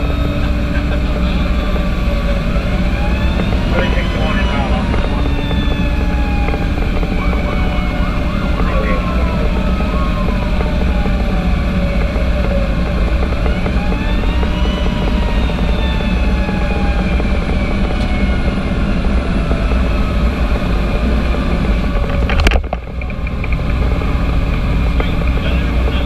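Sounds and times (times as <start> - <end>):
fire engine rumble: 0.0 - 26.0
siren wailing: 0.0 - 26.0.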